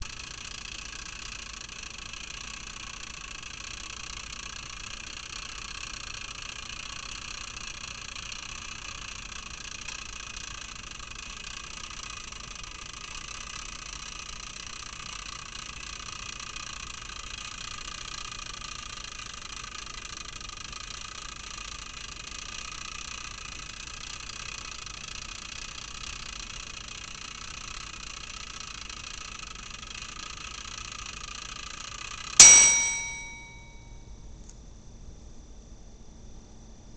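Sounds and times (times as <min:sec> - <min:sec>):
timer bell ding: 0:32.4 - 0:33.9.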